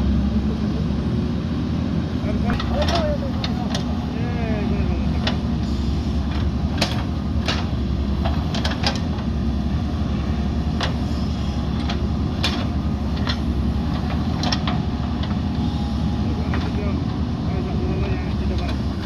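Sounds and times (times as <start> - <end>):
diesel engine running: 0.0 - 19.0
sharp clicks and knocks: 2.5 - 4.0, 5.2 - 5.5, 6.2 - 9.3, 10.8 - 11.0, 11.8 - 15.4.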